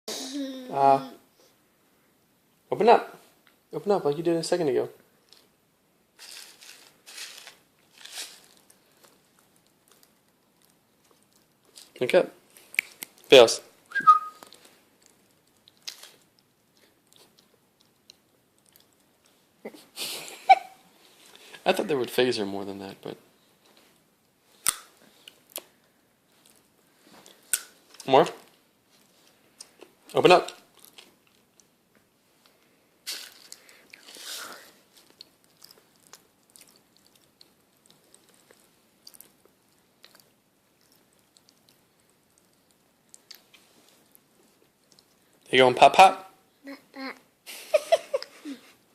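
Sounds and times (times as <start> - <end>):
popping candy crackling: 6.2 - 10.5
candy crackling: 6.2 - 19.1, 33.0 - 44.2
faint chewing: 6.7 - 13.3, 14.2 - 19.8, 23.6 - 28.1, 28.9 - 45.4
mouth chewing and smacking: 12.5 - 13.3, 13.9 - 19.4, 34.9 - 45.4.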